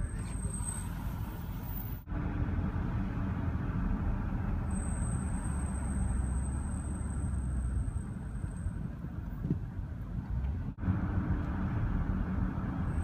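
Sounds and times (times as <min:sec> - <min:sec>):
high-pitched brake squeal: 0:00.0 - 0:02.0, 0:04.7 - 0:08.8
low road rumble: 0:00.0 - 0:13.0.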